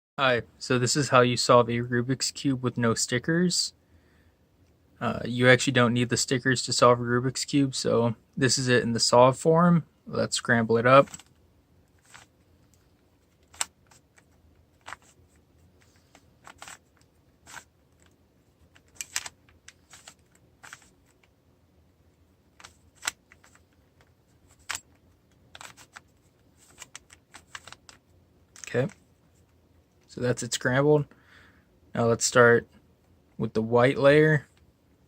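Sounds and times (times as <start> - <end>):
plastic puzzle cube clicking: 13.3 - 15.1, 16.1 - 21.3, 22.6 - 23.7, 24.6 - 28.0.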